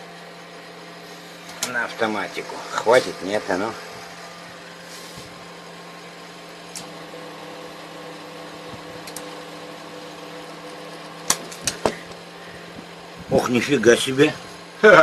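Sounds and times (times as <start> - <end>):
spot welder electrical hum: 0.0 - 15.0
sharp clicks: 9.0 - 9.3.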